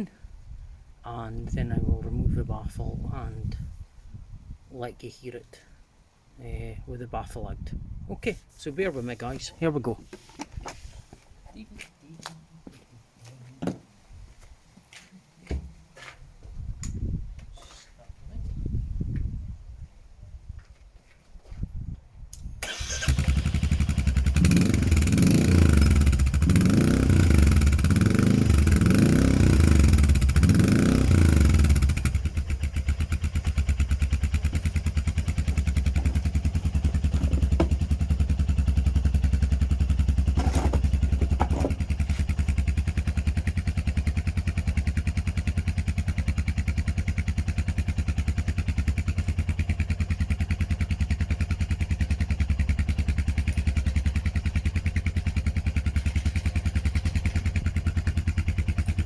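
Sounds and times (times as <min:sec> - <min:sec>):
motorcycle engine revving and idling: 0:22.6 - 0:59.0.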